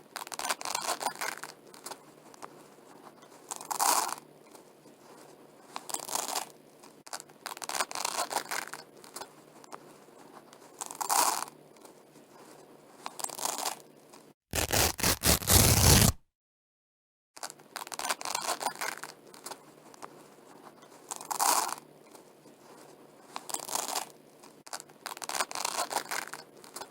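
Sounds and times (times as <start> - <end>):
velcro strips ripping apart: 14.5 - 16.2.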